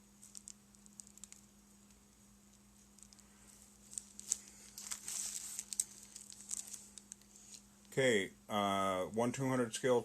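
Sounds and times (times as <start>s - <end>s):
plastic bags crinkling and crackling: 0.1s - 1.5s, 2.4s - 8.0s.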